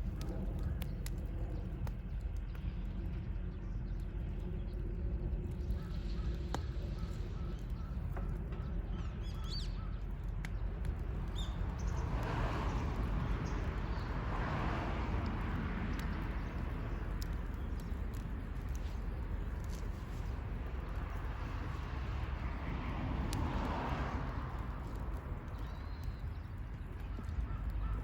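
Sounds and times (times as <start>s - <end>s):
steady low rumble: 0.0s - 28.0s.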